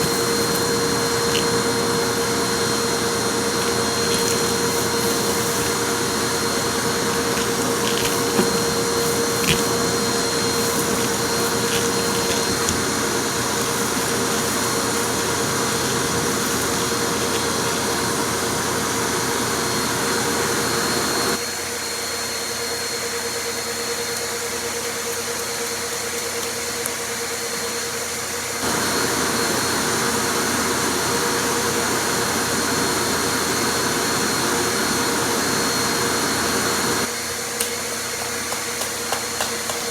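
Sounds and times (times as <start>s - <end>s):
debris clicking in vacuum: 0.0s - 18.2s
vacuum cleaner whine: 0.0s - 39.9s.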